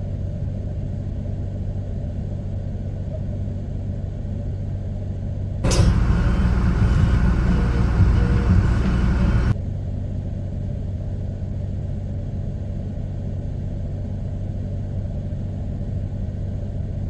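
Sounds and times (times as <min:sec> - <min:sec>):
truck engine rumbling: 0:05.6 - 0:09.6.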